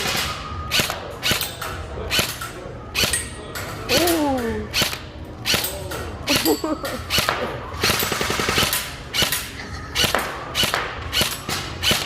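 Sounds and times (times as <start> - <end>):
airsoft guns firing: 6.3 - 12.0.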